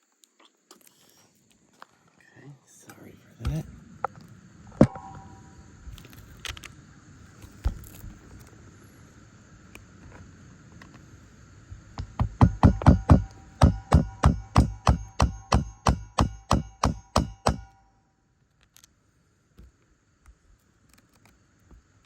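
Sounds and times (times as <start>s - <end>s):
hammer driving nail into shingle: 12.0s - 17.8s.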